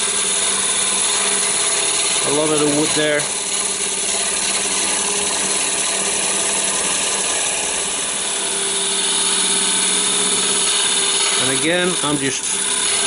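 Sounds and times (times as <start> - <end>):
lathe motor hum: 0.0 - 13.0
turning tool shaving wood: 0.0 - 13.0.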